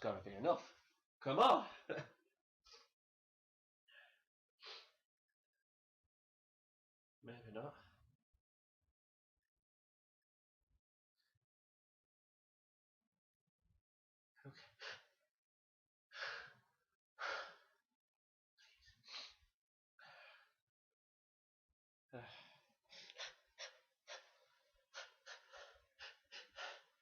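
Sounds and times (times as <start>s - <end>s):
short gasping breaths: 22.2s - 27.0s.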